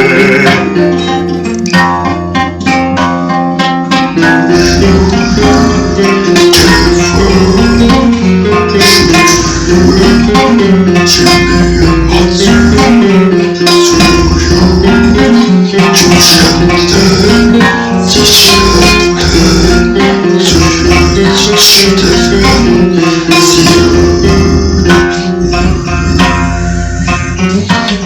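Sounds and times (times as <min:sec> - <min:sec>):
plucked strings: 0:00.0 - 0:28.0
percussive accent: 0:04.3 - 0:28.0
low droning tones: 0:04.5 - 0:13.1, 0:16.1 - 0:27.7.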